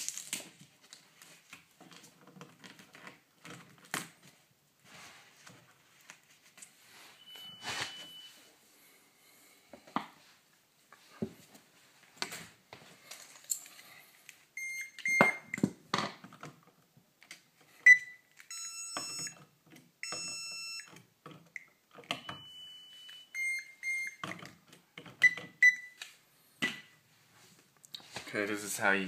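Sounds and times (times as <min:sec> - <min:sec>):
short electronic beeps: 0:07.2 - 0:08.4, 0:20.0 - 0:20.9.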